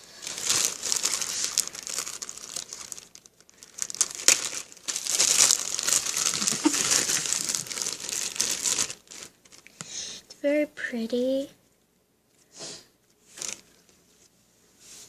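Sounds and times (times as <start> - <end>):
slime crackling: 0.1 - 9.7.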